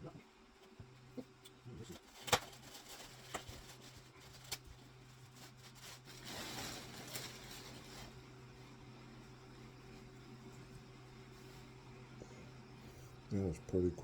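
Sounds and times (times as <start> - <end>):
packaging rustling scrape: 2.0 - 8.2.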